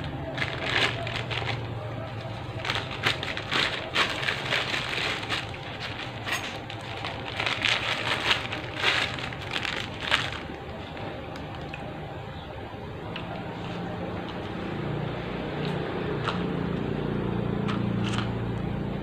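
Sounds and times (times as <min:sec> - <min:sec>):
plastic bag crinkling: 0:00.0 - 0:11.9.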